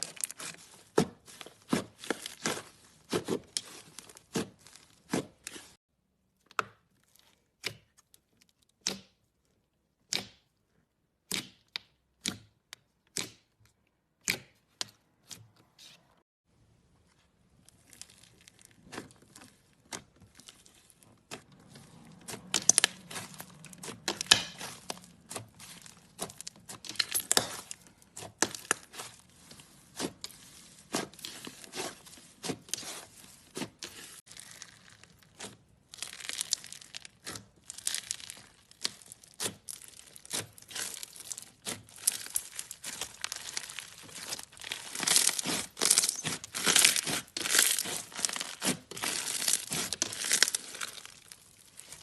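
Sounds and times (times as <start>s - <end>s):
slime crackling and popping: 17.7s - 52.0s.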